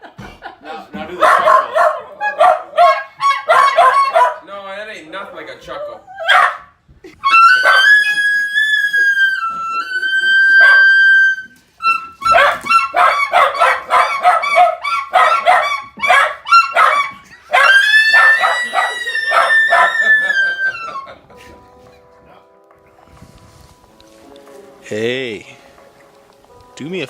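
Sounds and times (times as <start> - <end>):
elk call high whistle: 3.1 - 4.1, 7.2 - 21.0.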